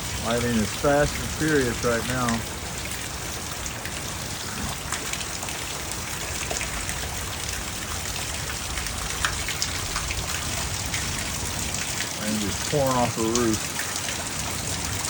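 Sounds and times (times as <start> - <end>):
heavy rain falling: 0.0 - 15.0
water pouring off a roof: 0.0 - 15.0
drops splattering: 0.1 - 2.5.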